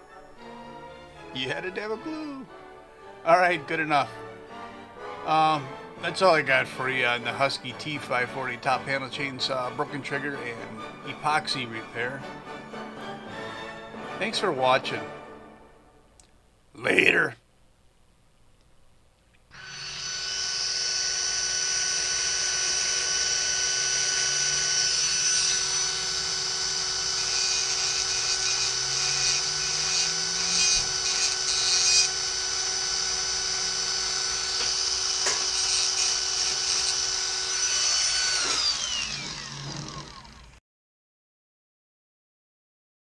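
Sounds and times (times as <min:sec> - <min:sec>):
power tool motor whining: 0:19.5 - 0:40.6.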